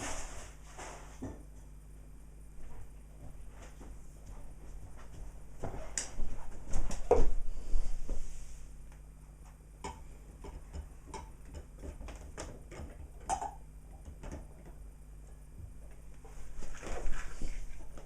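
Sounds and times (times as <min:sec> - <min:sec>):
low steady hum: 0:00.0 - 0:18.0
coffee machine ticks and pops: 0:09.8 - 0:14.8.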